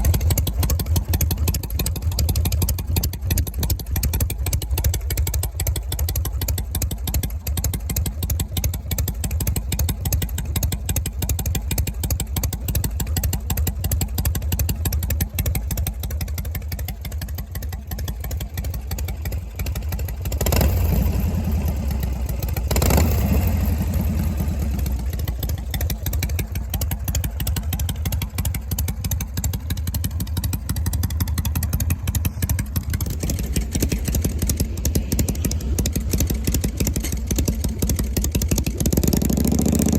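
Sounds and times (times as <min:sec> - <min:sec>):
motorcycle engine deep exhaust: 0:00.0 - 0:39.9.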